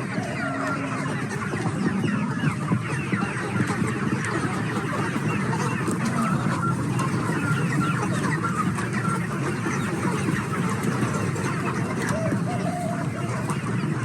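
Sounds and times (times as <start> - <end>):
chickens clucking: 0.0 - 14.0.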